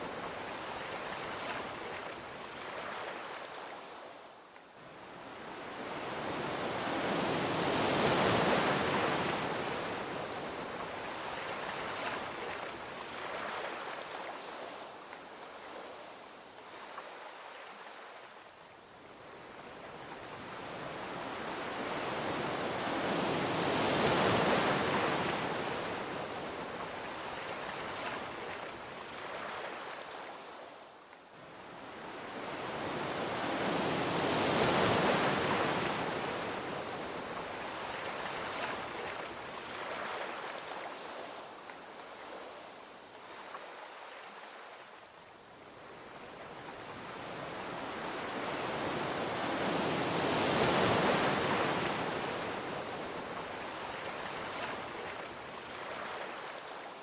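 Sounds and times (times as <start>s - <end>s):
gentle ocean waves washing: 19.0s - 57.0s.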